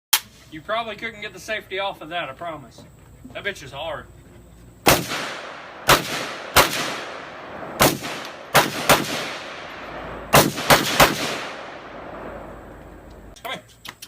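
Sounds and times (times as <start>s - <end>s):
rifle shots echoing: 4.8s - 13.0s.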